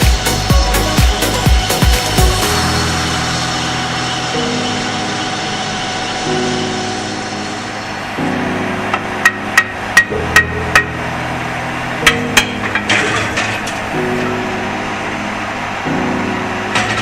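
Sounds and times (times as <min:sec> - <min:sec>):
background music: 0:00.0 - 0:17.0
hammer striking metal: 0:08.9 - 0:11.1, 0:12.0 - 0:13.8.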